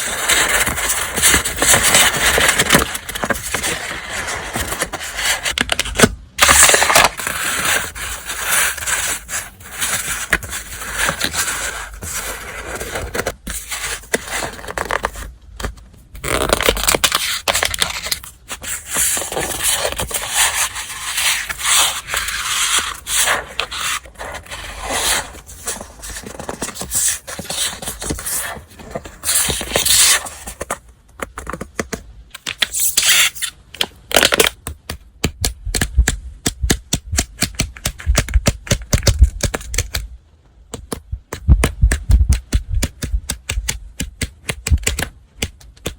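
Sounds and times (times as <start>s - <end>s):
paper rustling and scraping: 0.0s - 30.8s
paper crinkles and taps: 0.1s - 24.6s, 40.7s - 45.9s.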